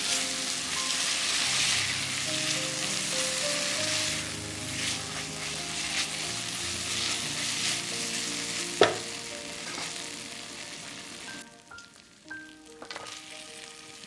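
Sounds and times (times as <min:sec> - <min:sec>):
meat sizzling in a pan: 0:00.0 - 0:14.0
utensil clacking against pan: 0:08.8 - 0:09.9.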